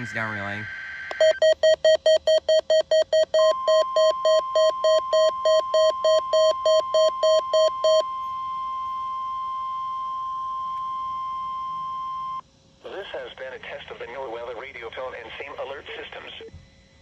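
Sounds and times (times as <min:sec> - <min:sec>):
steady high alarm tone: 0:00.0 - 0:12.4
buzzer beeping: 0:01.1 - 0:08.3.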